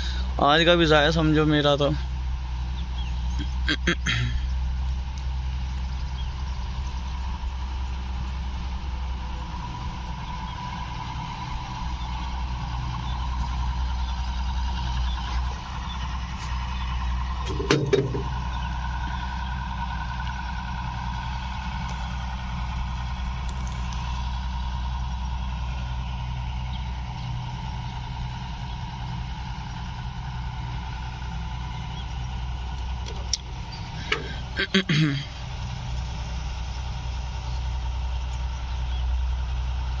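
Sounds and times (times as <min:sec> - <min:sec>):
farm machine engine running: 0:00.0 - 0:40.0
clatter of sharp knocks: 0:17.4 - 0:18.4.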